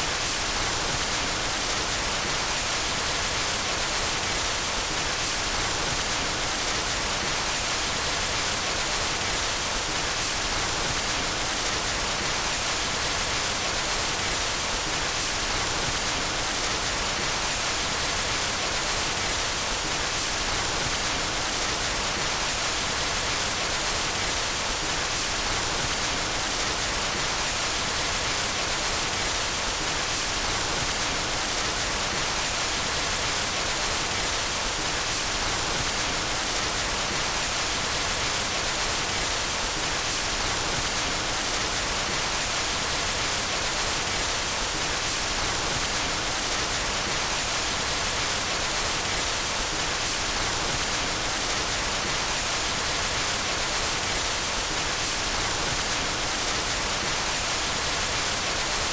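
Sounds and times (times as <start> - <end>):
steady white noise hiss: 0.0 - 58.9.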